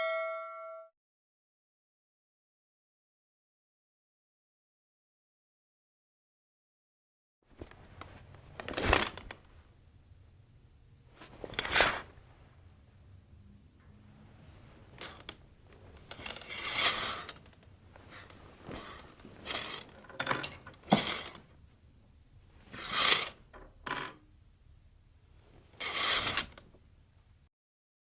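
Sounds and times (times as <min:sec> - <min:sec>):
curtain rings scraping along rail: 0:11.2 - 0:12.4, 0:14.8 - 0:21.5, 0:22.6 - 0:23.6, 0:25.8 - 0:26.6
curtain swishing: 0:18.0 - 0:20.0.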